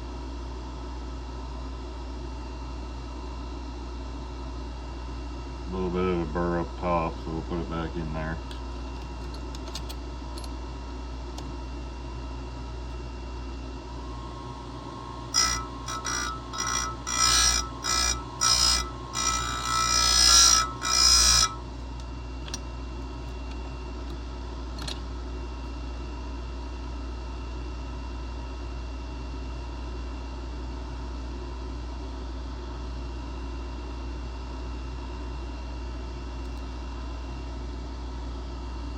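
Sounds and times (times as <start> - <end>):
steady low hum: 5.4 - 25.8
grinder grinding saw chain: 14.4 - 21.9.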